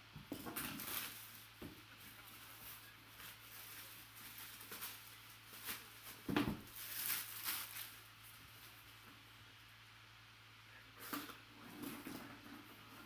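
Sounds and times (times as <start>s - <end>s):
low electrical hum: 0.0s - 13.0s
packaging rustling and crinkling: 0.4s - 9.0s.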